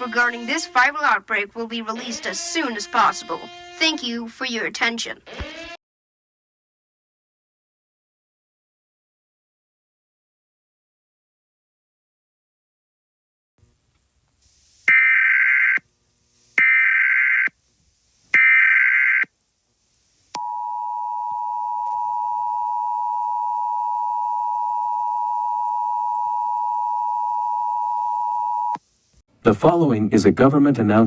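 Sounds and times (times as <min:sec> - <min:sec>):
buzzy digital data bursts: 0:01.8 - 0:04.2.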